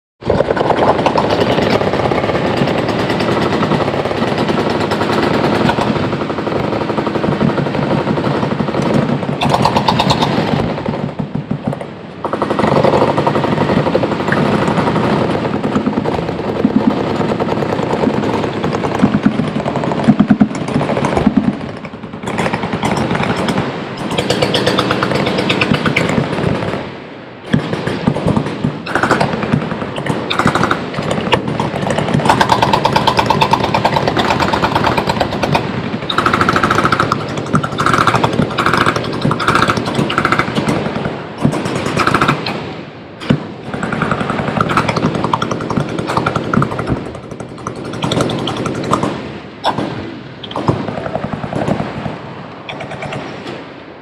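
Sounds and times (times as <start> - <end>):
machine-gun fire: 0.4 - 53.4.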